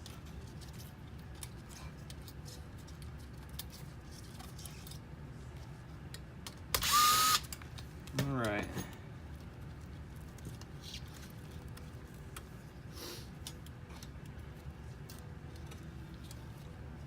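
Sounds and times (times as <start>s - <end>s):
faint clicks of small parts: 0.0s - 6.7s, 13.3s - 17.0s.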